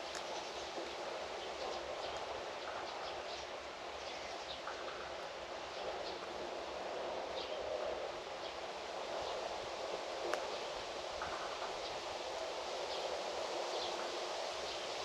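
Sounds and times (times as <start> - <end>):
rustling hiss of wind: 0.0 - 15.0.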